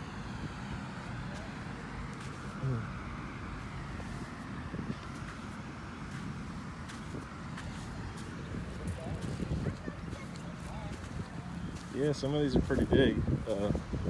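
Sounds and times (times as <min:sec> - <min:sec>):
wind on microphone: 0:04.7 - 0:05.1, 0:08.2 - 0:11.8, 0:12.4 - 0:14.0.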